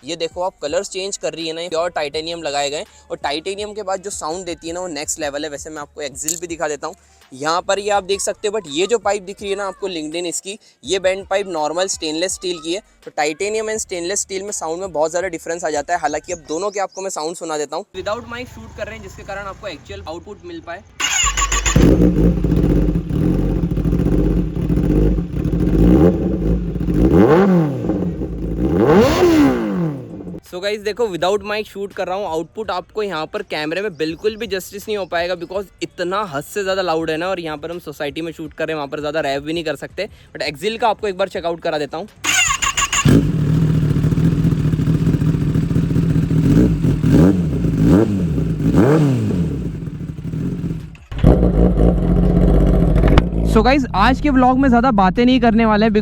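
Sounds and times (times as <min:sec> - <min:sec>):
motorcycle engine idling: 0:18.0 - 0:20.1, 0:21.0 - 0:30.4, 0:42.2 - 0:53.4.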